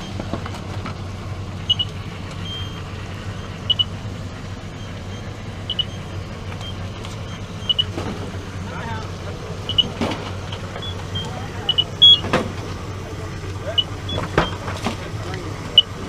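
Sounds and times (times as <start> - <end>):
vehicle engine idling: 0.0 - 16.0
electronic warning beeps: 1.6 - 8.4, 9.6 - 12.4, 13.6 - 14.6.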